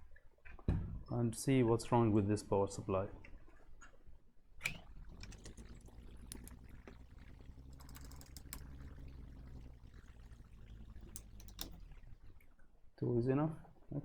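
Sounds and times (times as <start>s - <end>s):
faint low hum: 4.6s - 13.5s.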